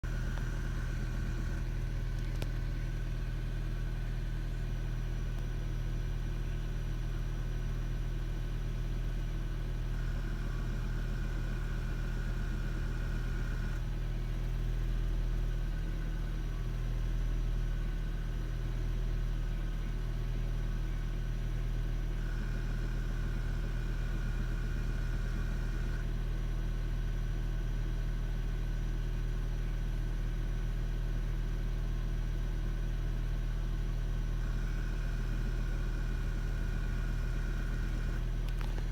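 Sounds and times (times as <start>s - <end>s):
car low hum: 0.0s - 6.8s, 34.4s - 38.9s.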